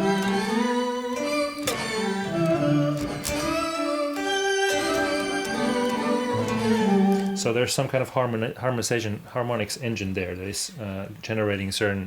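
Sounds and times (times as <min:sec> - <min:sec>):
organ-like electric guitar: 0:00.0 - 0:07.5.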